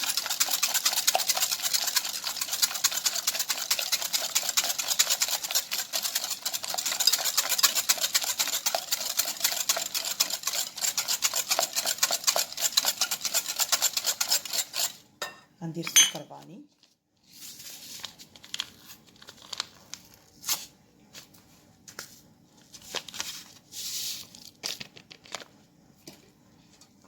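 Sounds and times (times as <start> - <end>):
whisk beating in a bowl: 0.0 - 15.0.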